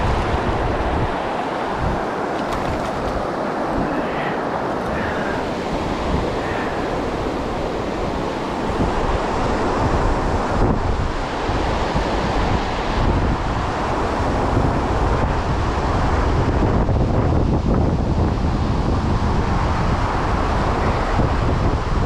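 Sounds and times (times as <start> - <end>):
creek water flowing: 0.0 - 11.8
wind buffeting microphone: 0.0 - 22.0.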